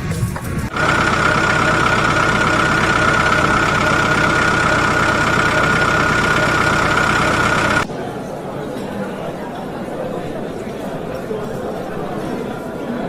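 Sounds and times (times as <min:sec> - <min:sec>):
machine rumbling and whining: 0:00.0 - 0:07.9.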